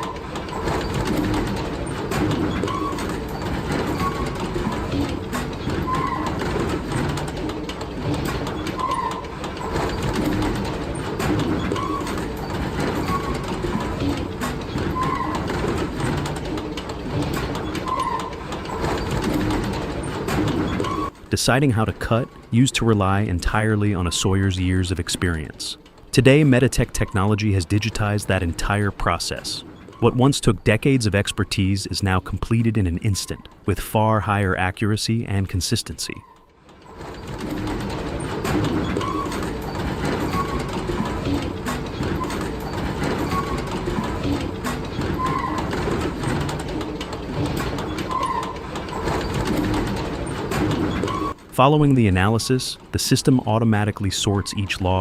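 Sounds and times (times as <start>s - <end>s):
short squeaks: 0.0s - 22.6s, 25.3s - 31.5s, 32.8s - 33.7s, 36.1s - 51.4s
conveyors rattling and knocking: 0.0s - 55.0s
machinery rumbling: 0.0s - 55.0s
machinery squeal: 2.4s - 4.4s, 5.8s - 6.4s, 8.6s - 10.1s, 11.6s - 13.6s, 14.8s - 15.5s, 26.4s - 31.6s, 32.8s - 33.7s, 38.8s - 41.4s, 54.2s - 55.0s.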